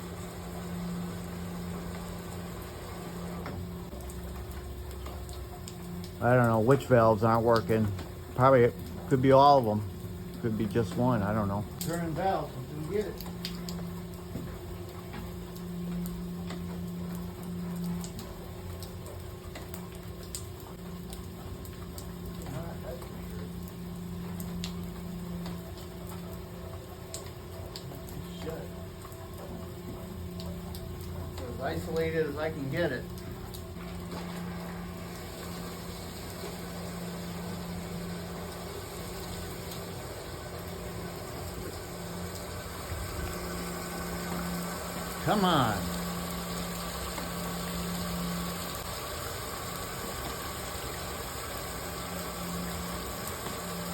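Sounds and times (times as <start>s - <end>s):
low hum of machinery: 0.0s - 53.9s
noisy hiss: 6.2s - 13.6s, 34.4s - 53.9s
light ticks and clicks: 11.8s - 12.2s.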